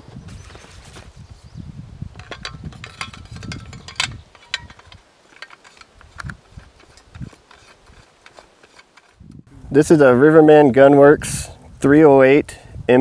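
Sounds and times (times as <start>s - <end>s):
low rumbling handling noise: 1.8s - 10.4s
rifle metallic clicks and rattles: 2.2s - 9.4s.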